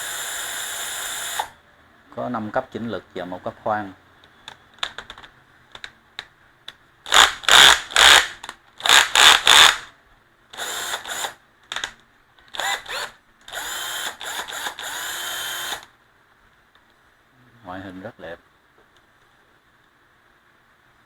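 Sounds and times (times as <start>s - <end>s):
cordless drill whirring: 0.0s - 1.6s, 7.1s - 9.8s, 10.6s - 11.4s, 12.5s - 15.9s.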